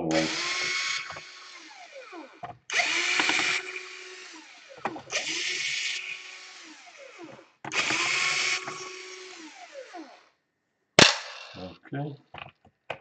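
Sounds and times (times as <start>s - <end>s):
electric screwdriver whirring: 0.1s - 10.3s.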